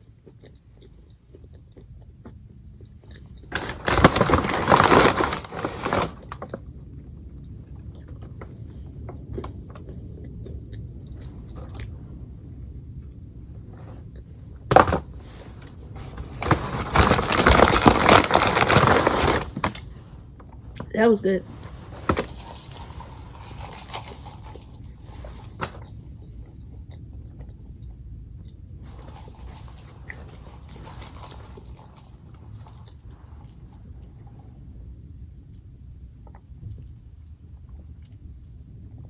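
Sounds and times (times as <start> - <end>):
person chewing: 0.0 - 3.8, 7.8 - 11.9
food packaging rustling: 3.5 - 6.6, 14.6 - 20.1, 21.4 - 25.9, 28.9 - 33.6.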